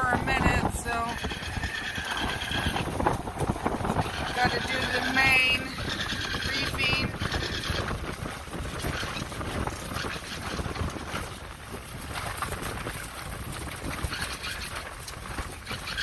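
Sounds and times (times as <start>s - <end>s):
water rushing along hull: 0.0s - 16.0s
wind buffeting microphone: 0.0s - 16.0s.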